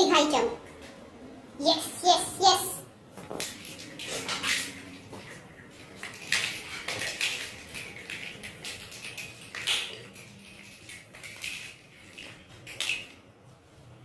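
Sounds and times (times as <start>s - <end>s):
beads clicking and clattering: 3.3s - 13.2s.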